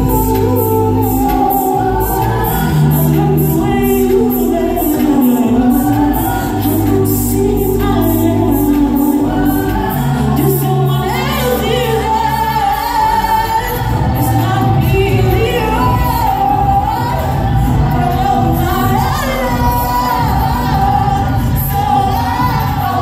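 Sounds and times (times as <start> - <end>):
female lead voice singing: 0.0 - 23.0
group singing: 0.0 - 23.0
steady beat: 0.0 - 23.0.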